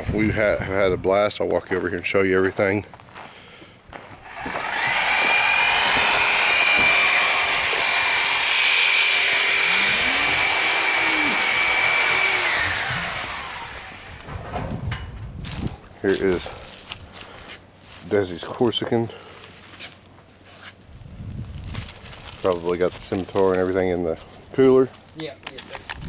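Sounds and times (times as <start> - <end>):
power tool motor whining: 4.2 - 14.3.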